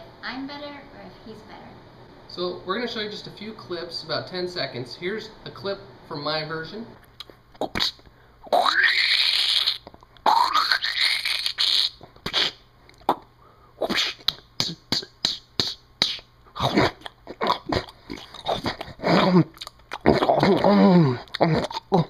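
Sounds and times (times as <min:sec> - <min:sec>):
mouth pops and clicks: 0:07.0 - 0:08.1, 0:11.3 - 0:22.0.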